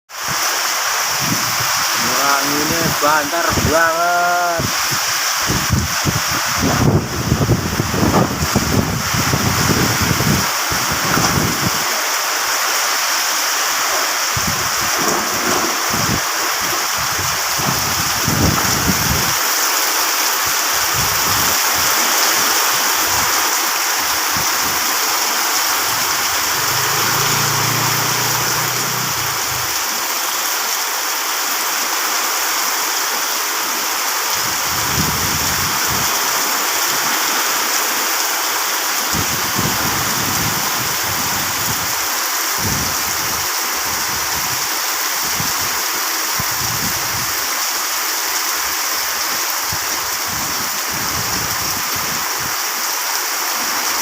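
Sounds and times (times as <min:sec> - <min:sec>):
heavy rain pouring: 0:00.1 - 0:54.0
wind gusts on microphone: 0:01.0 - 0:12.0, 0:14.1 - 0:19.4, 0:20.4 - 0:30.2, 0:34.3 - 0:36.3, 0:39.1 - 0:45.8, 0:46.4 - 0:47.4, 0:49.7 - 0:52.6.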